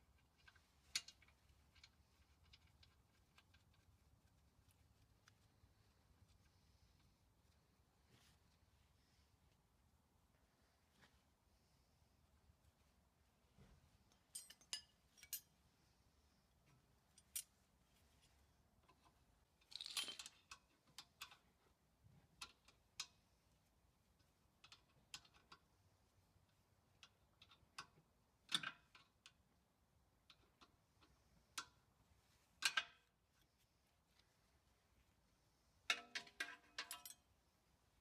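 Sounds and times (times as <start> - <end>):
metal tools clicking and clinking: 14.1 - 15.5, 19.7 - 21.4, 35.9 - 37.3.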